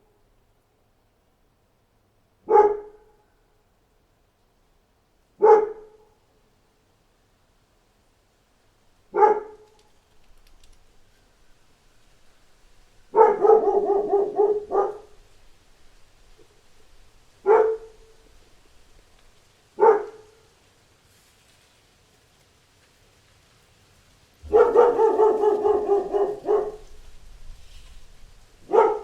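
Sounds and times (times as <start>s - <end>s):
dog barking: 2.5s - 3.2s, 5.4s - 6.2s, 9.1s - 9.8s, 13.1s - 15.3s, 17.4s - 18.3s, 19.8s - 20.4s, 24.4s - 27.0s, 28.6s - 29.0s.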